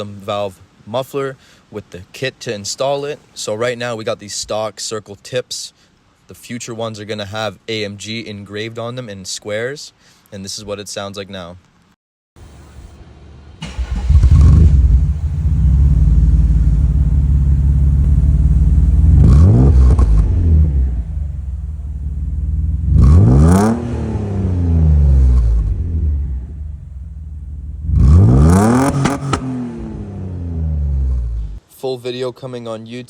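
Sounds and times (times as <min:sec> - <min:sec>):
car engine starting and idling: 0:12.4 - 0:31.6
engine revving: 0:13.6 - 0:31.6.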